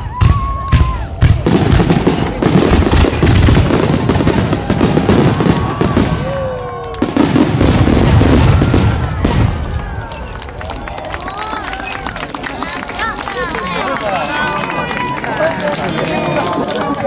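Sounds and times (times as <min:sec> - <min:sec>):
whistling fireworks: 0:00.0 - 0:12.3
fireworks bursting and crackling: 0:00.0 - 0:14.1.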